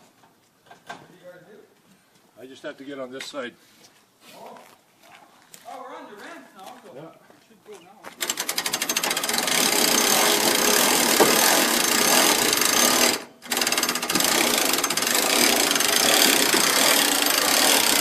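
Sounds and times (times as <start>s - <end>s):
electric winch rattling: 8.2s - 18.0s.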